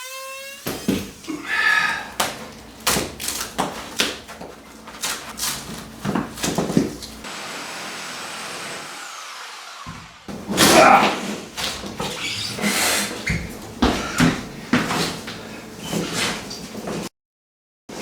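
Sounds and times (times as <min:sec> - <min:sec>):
cabinets being torn out: 0:00.6 - 0:07.3, 0:10.3 - 0:13.3.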